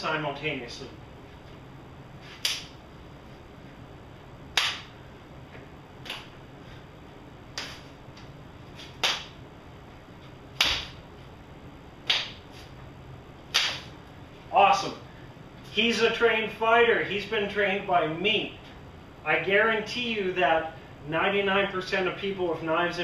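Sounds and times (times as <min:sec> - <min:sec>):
hands and forearms slapping: 0:02.3 - 0:02.8, 0:04.5 - 0:05.0, 0:06.0 - 0:06.4, 0:07.5 - 0:09.4, 0:10.6 - 0:11.0, 0:12.0 - 0:12.7, 0:13.5 - 0:14.0.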